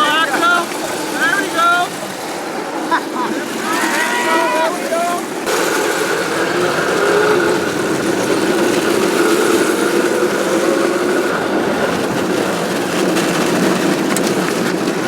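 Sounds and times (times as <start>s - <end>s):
small vehicle motor running: 0.0s - 15.0s.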